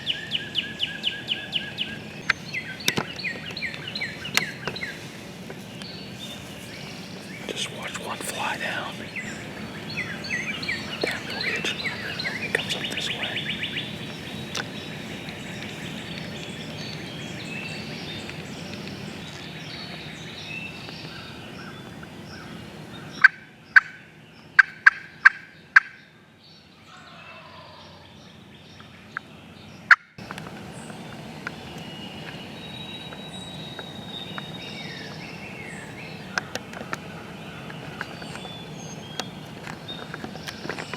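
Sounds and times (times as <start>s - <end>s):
songbirds chirping: 0.0s - 40.9s
wild turkey gobbling: 7.4s - 17.1s
sharp loud calls: 7.4s - 18.1s.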